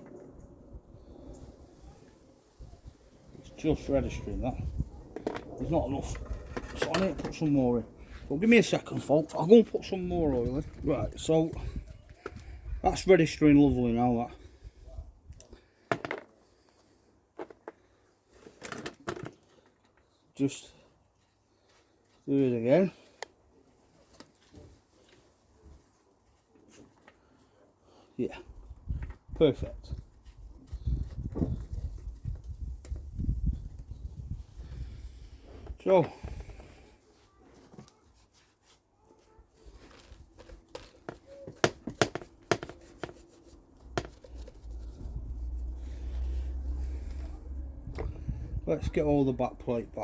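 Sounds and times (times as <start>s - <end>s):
steady low rumble: 43.8s - 48.7s.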